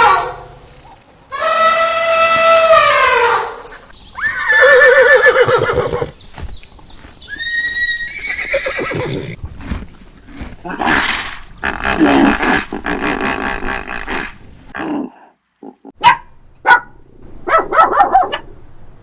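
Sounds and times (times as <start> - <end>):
horse whinnying: 4.2 - 6.2, 7.2 - 9.4.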